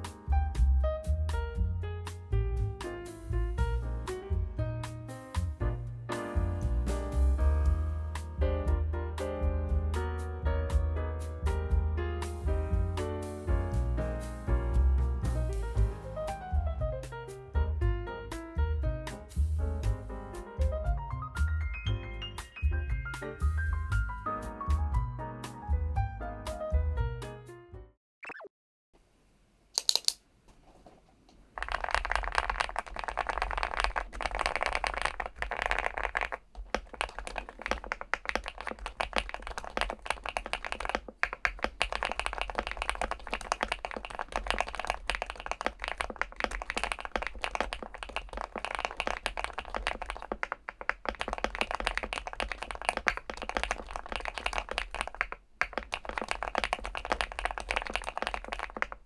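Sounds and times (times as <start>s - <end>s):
sharp click: 29.7s - 30.2s
mechanical keyboard typing: 29.8s - 30.2s, 31.6s - 59.0s.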